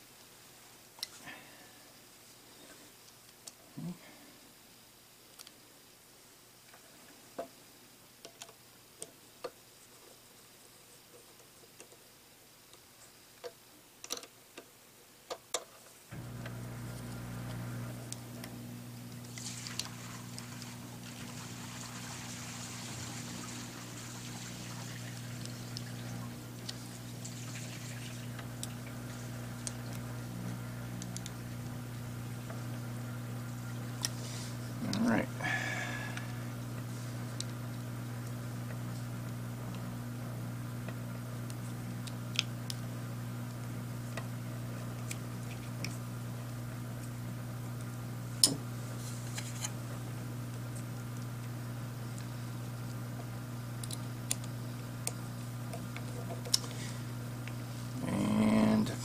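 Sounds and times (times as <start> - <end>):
steady low hum: 16.1 - 59.0.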